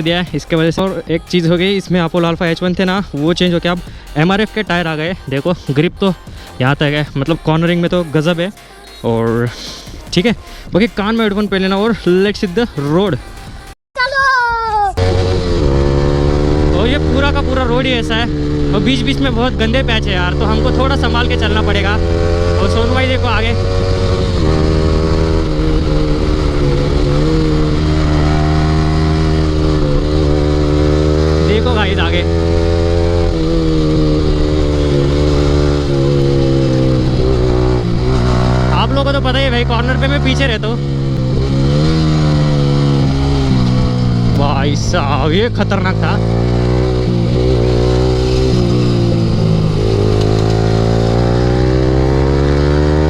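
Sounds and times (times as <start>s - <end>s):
wind and road noise: 14.0s - 53.0s
motorcycle engine running: 15.0s - 53.0s.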